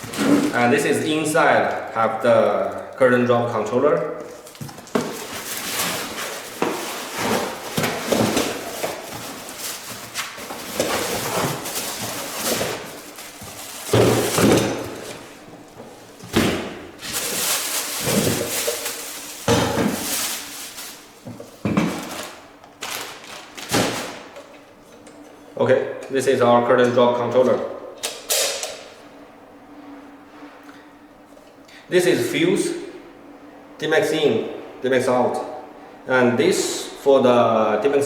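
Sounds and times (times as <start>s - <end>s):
cardboard packing rustling: 0.0s - 24.5s.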